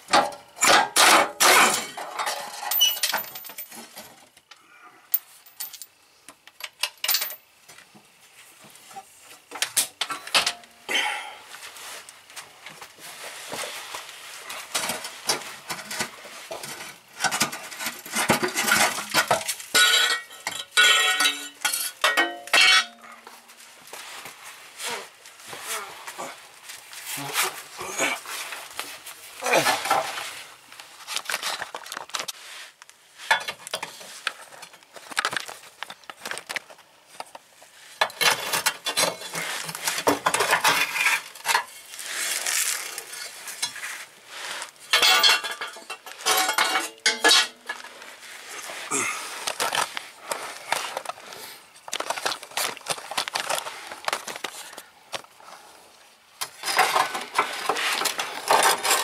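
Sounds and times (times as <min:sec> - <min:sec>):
metal tools clinking and clattering: 0:00.6 - 0:04.1, 0:05.1 - 0:05.9, 0:06.8 - 0:07.4, 0:16.6 - 0:23.1, 0:44.9 - 0:47.9, 0:56.6 - 0:59.0.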